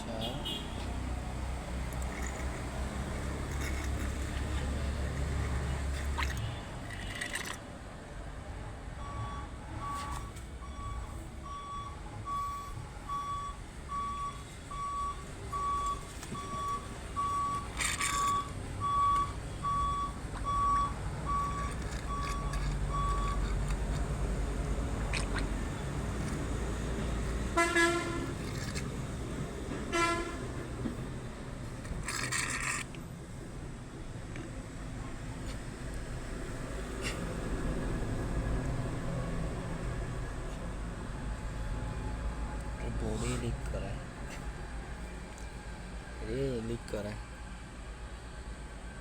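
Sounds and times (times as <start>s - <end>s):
reversing alarm beeping: 9.0s - 23.5s.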